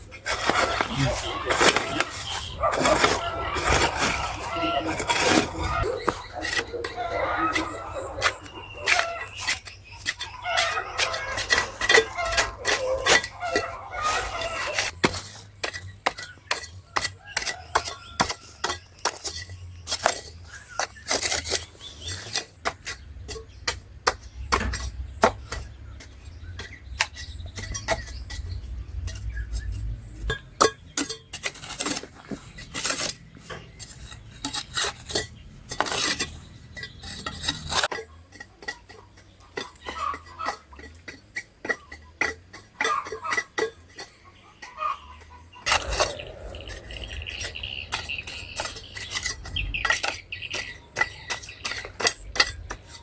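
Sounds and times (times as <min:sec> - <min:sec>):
low rumble: 0:45.7 - 0:49.0.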